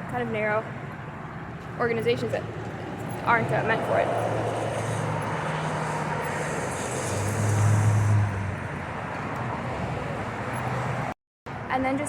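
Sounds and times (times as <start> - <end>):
steady traffic hum: 0.0 - 12.0
car passing by: 2.4 - 11.2.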